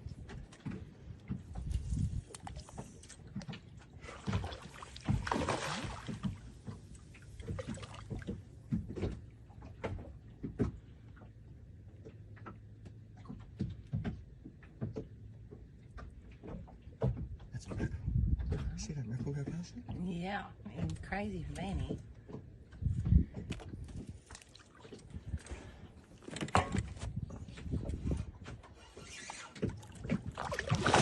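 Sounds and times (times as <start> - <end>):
water sloshing: 0.0 - 31.0
water splashing: 2.0 - 10.2, 24.0 - 26.8, 29.0 - 31.0.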